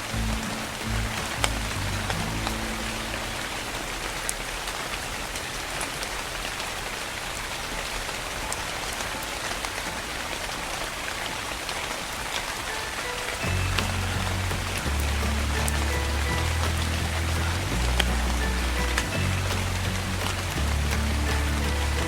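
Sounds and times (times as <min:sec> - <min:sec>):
low music notes: 0:00.0 - 0:04.5, 0:12.9 - 0:22.0
soft rain falling: 0:00.0 - 0:22.0.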